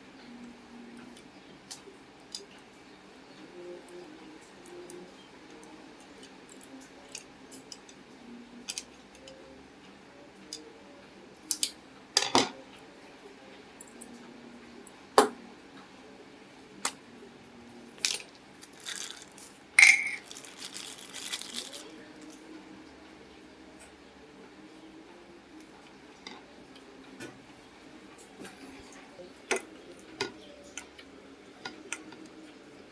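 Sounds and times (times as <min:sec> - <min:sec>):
sharp metallic clink ringing: 0:19.8 - 0:20.2
tools clicking and clinking: 0:19.8 - 0:20.2.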